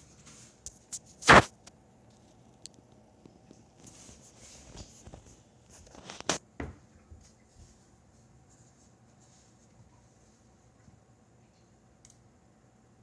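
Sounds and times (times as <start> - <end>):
fan with scratchy ticks: 0.0 - 6.4
faint steady hum: 0.0 - 13.0.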